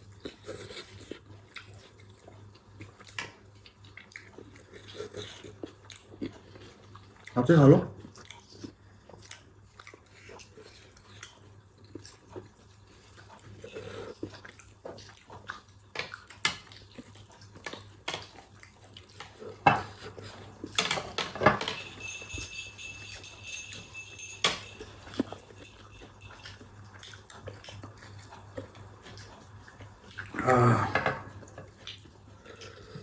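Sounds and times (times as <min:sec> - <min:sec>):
cutlery clinking on dishes: 0:19.1 - 0:26.7
high ringing tone: 0:21.5 - 0:26.6.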